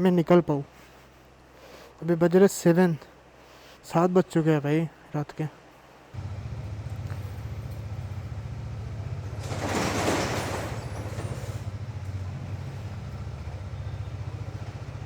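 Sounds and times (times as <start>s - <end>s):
motorcycle engine idling: 6.2s - 15.0s.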